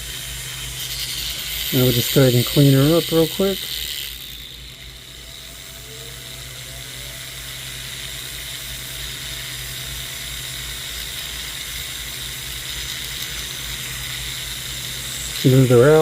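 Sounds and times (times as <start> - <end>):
rotary tool whirring: 0.0 - 16.0.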